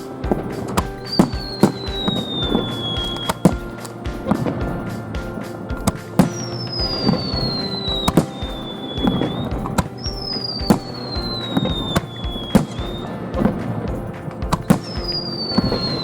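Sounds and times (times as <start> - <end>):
background music: 0.0 - 16.0
firework shells bursting: 0.0 - 16.0
falling firework whistles: 0.7 - 3.6, 5.9 - 13.2, 14.7 - 16.0.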